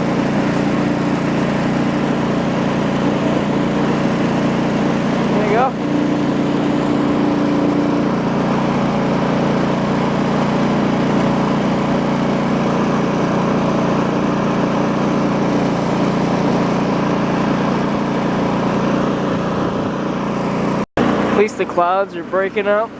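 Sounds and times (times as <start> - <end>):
petrol engine running: 0.0 - 22.9.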